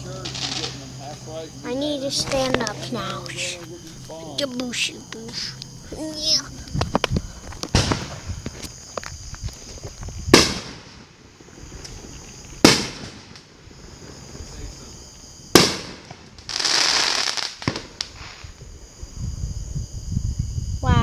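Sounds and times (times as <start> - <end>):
fireworks bangs with echo: 0.0 - 1.6, 7.6 - 8.6, 10.3 - 12.0, 12.6 - 14.7, 15.5 - 18.4
fireworks hissing crackling burst: 0.0 - 19.0.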